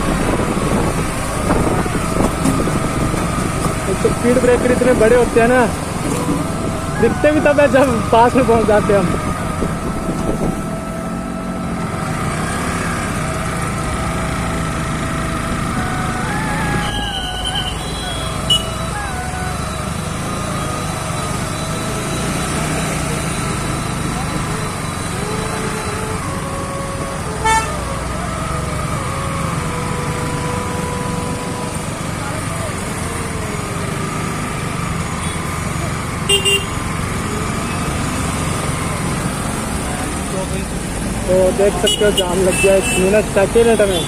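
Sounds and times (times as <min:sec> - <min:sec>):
motorcycle engine rumble: 0:00.0 - 0:44.0
vehicle horn beep: 0:16.8 - 0:18.8, 0:27.4 - 0:27.8, 0:36.2 - 0:36.8, 0:41.8 - 0:44.0.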